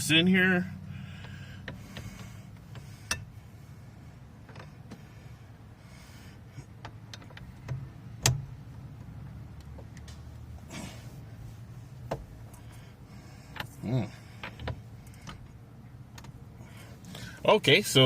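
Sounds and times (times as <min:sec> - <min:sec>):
steady low hum: 0:00.0 - 0:18.0
metal clicks and knocks: 0:06.8 - 0:10.2.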